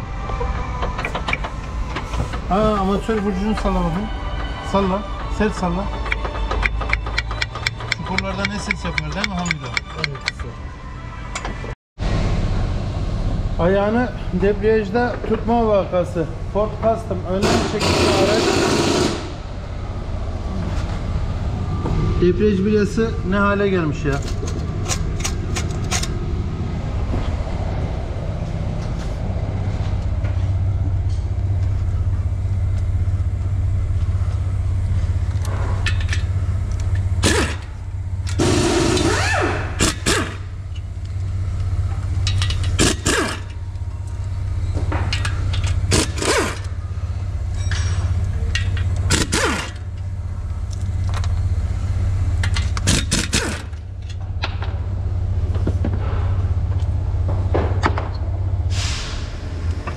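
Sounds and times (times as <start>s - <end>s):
low machine hum: 0.0s - 59.9s
metallic clanks and knocks: 0.2s - 10.5s, 41.9s - 43.6s, 44.6s - 46.8s.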